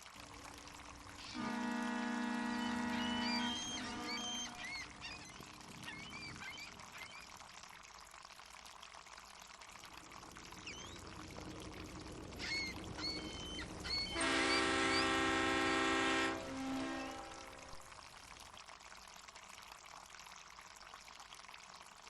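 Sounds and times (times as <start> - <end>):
harbour water washing: 0.0 - 20.8
boat horn blast: 1.2 - 4.7, 14.0 - 17.8
seagulls calling: 2.5 - 7.2, 12.4 - 15.3.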